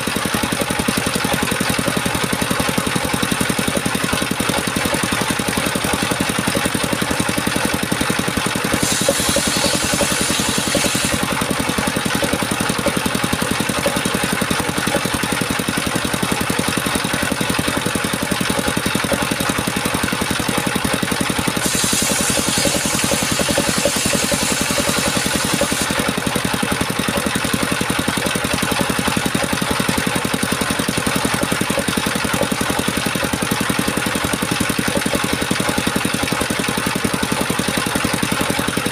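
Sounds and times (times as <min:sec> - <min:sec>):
small engine running steadily: 0:00.0 - 0:38.9
bright hiss: 0:08.8 - 0:11.2, 0:21.6 - 0:25.9.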